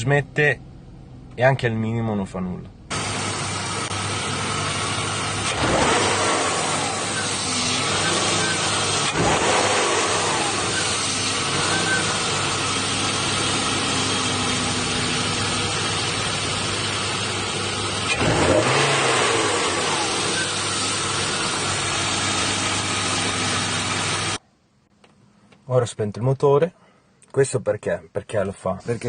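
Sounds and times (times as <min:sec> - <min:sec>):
car engine revving and idling: 0:02.9 - 0:24.4.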